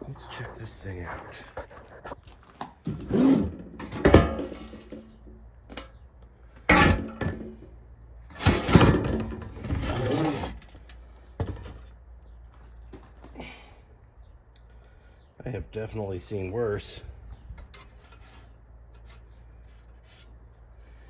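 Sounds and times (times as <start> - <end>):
metal box parts clunking and scraping: 2.8 - 6.0, 6.6 - 7.7, 8.3 - 11.9, 17.6 - 20.1.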